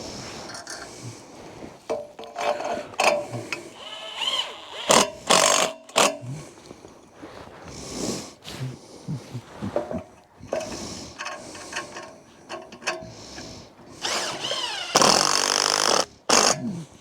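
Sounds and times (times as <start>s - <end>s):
tools knocking and clanking: 1.9s - 3.6s.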